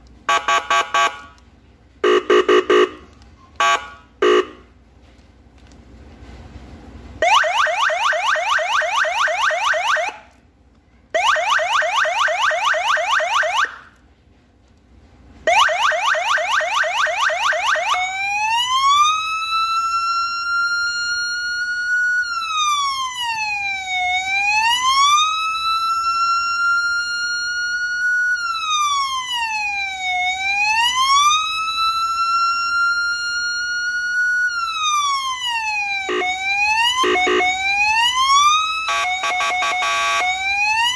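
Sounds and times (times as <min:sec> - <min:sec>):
electronic siren yelp and wail: 0:07.2 - 0:10.3, 0:11.2 - 0:13.8, 0:15.5 - 0:40.9.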